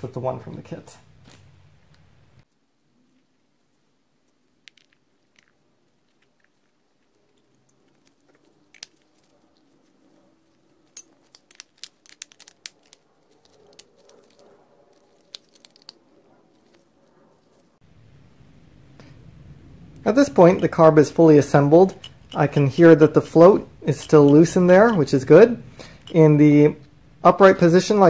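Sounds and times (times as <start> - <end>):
small parts clicking and crinkling: 4.2 - 17.7, 21.7 - 26.4.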